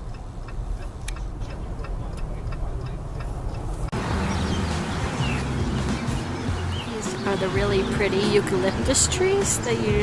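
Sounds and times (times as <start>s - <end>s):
turn signal clicking: 0.0s - 3.9s
car driving rumble: 0.0s - 10.0s
road and wind noise: 0.0s - 10.0s.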